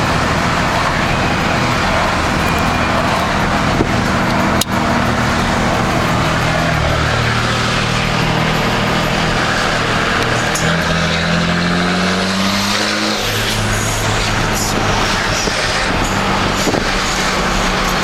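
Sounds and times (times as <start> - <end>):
diesel engine accelerating: 0.0 - 18.0.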